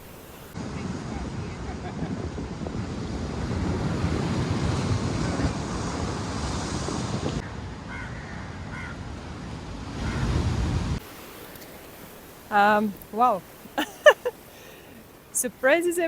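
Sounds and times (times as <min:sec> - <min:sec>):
ocean surf breaking: 0:00.0 - 0:07.4, 0:09.2 - 0:16.0
wind buffeting microphone: 0:00.0 - 0:07.9.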